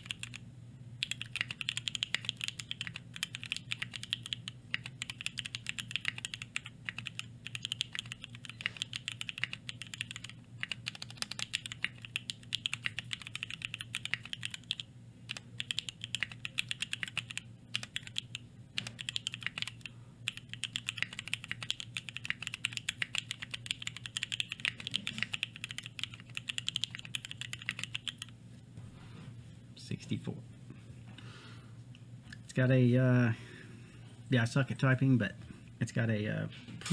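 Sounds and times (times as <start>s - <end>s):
faint low hum: 0.0s - 36.9s
mechanical keyboard key clacks: 1.0s - 28.2s.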